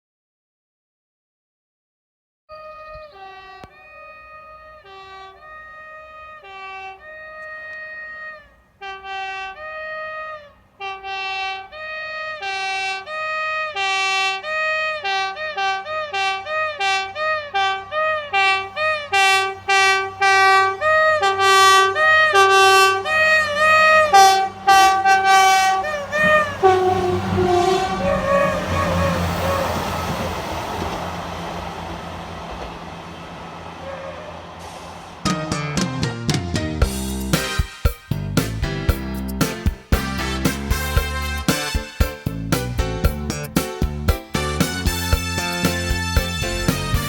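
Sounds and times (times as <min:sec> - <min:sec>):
train horn playing a tune: 0:02.5 - 0:30.9, 0:33.4 - 0:36.1, 0:39.9 - 0:42.3, 0:44.4 - 0:47.0.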